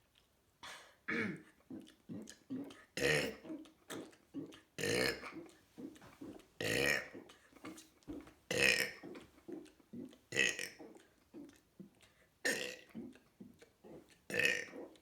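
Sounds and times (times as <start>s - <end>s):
person burping: 0.7s - 1.5s.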